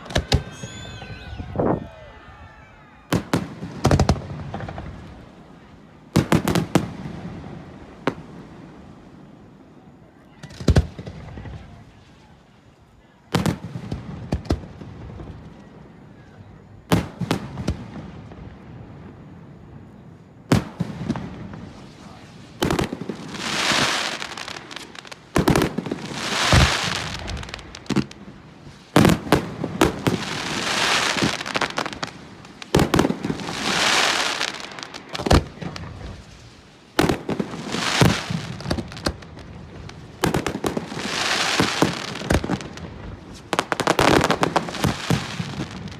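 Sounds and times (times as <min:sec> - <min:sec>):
firework booms: 0:00.0 - 0:09.4, 0:20.5 - 0:45.9
firework crackling: 0:00.0 - 0:09.5, 0:20.5 - 0:45.9.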